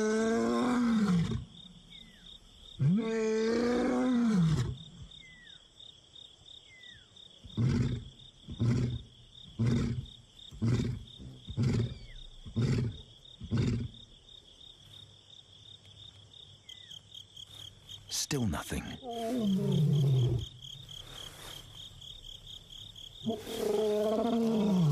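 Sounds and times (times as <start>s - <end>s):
lion roaring: 0.0s - 1.4s, 2.8s - 4.8s, 19.0s - 20.6s, 23.2s - 24.9s
insects trilling: 0.0s - 24.9s
lion grunting: 7.4s - 14.0s, 18.6s - 21.2s, 23.1s - 24.9s.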